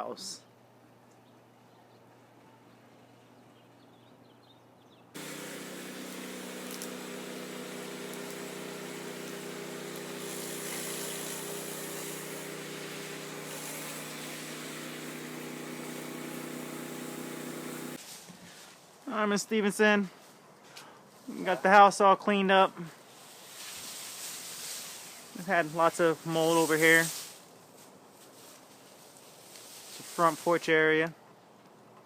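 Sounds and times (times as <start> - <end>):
pressure washer engine drone: 5.2 - 18.0
water spray hiss: 5.2 - 18.0, 23.3 - 27.4, 29.5 - 30.7.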